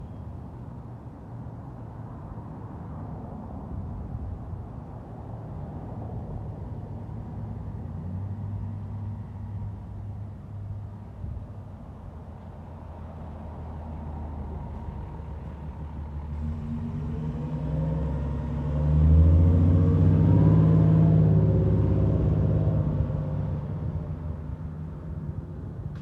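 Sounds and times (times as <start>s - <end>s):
fire engine diesel driving past: 12.4s - 25.1s.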